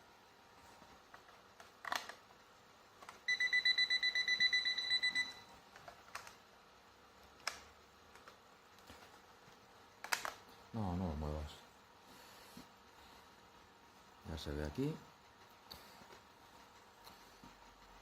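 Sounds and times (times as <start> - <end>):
alarm clock beeping: 3.2 - 5.5.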